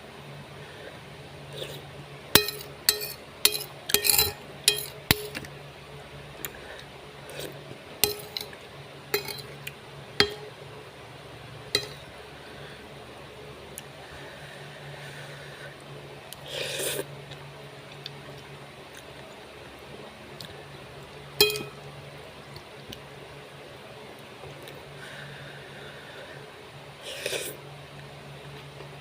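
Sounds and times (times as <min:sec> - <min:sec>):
utensils clinking on a dish: 0:02.4 - 0:05.5, 0:08.0 - 0:09.6, 0:10.2 - 0:10.5, 0:11.7 - 0:12.1, 0:21.4 - 0:21.8.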